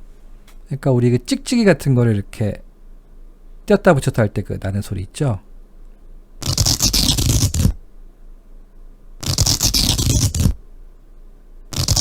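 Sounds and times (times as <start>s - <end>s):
lung crackles through stethoscope: 11.8s - 12.0s.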